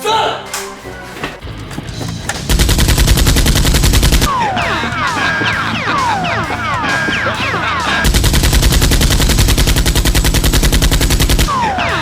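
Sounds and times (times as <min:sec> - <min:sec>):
rapid machine-gun burst: 0:02.5 - 0:04.4, 0:05.7 - 0:11.6.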